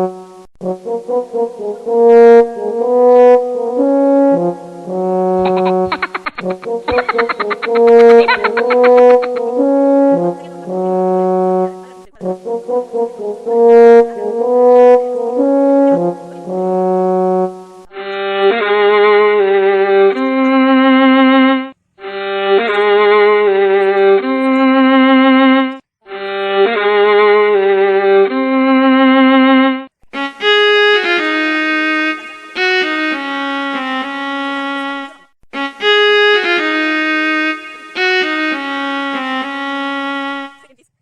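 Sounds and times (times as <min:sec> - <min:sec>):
slow brass-like melody: 0:00.0 - 0:40.8.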